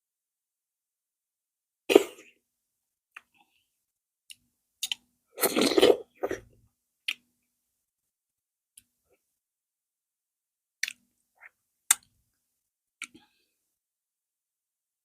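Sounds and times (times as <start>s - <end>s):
mouth sounds of eating: 4.8s - 6.5s.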